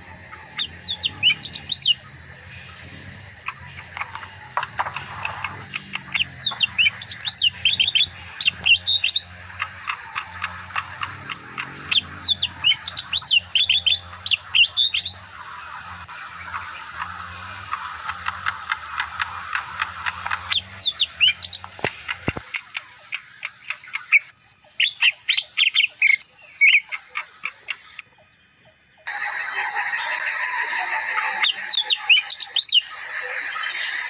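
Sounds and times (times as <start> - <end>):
bird singing whistled notes: 0.4 - 22.4, 23.4 - 27.0, 29.1 - 34.0.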